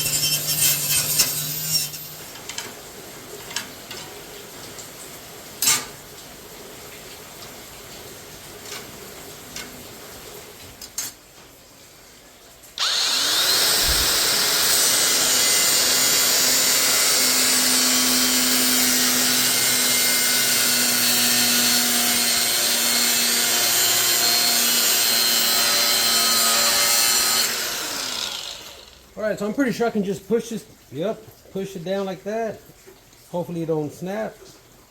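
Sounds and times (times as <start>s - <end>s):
power tool grinding metal: 0.0s - 2.4s, 12.8s - 29.1s.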